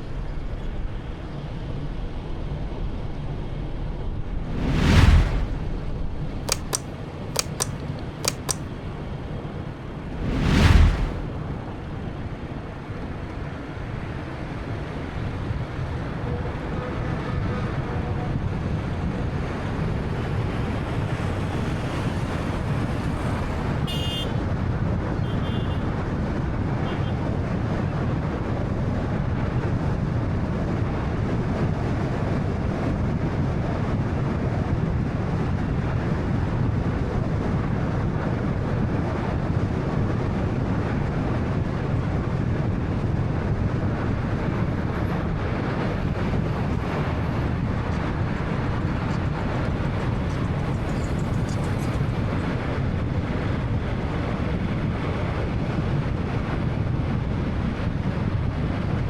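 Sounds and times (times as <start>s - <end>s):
tyres and engine rumble: 9.3s - 14.5s, 16.0s - 25.1s, 41.6s - 56.0s.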